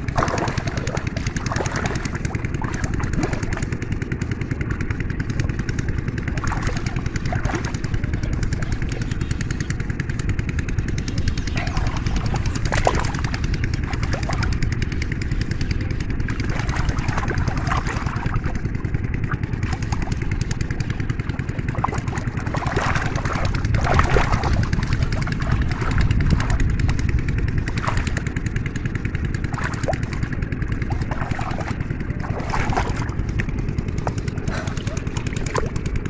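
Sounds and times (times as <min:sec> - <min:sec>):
small engine running: 0:00.0 - 0:36.0
faint voices: 0:07.4 - 0:10.0.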